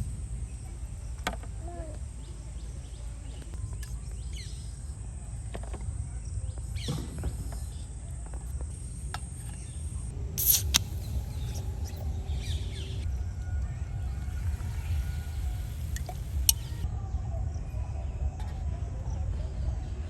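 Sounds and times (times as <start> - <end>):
high insect drone: 10.0 - 16.8
low rumble: 10.1 - 16.9
bird chirps: 10.4 - 16.8
sharp loud high burst: 10.4 - 16.8.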